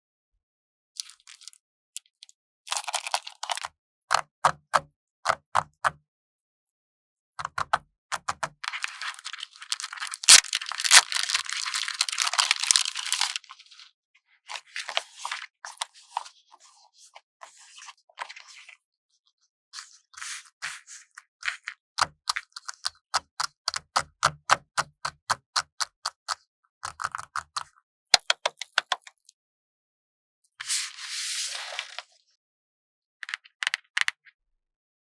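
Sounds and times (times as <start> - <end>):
sharp taps and clicks: 4.1 - 6.0, 7.4 - 8.5, 22.9 - 28.9
papery rustles: 8.8 - 13.4
stickers peeling off backing: 10.0 - 12.8.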